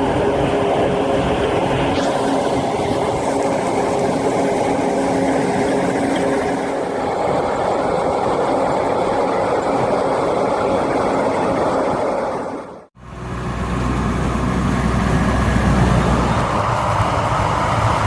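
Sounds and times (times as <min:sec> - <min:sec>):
dense rushing noise: 0:00.0 - 0:08.7
heavy machine engine running: 0:00.0 - 0:18.0.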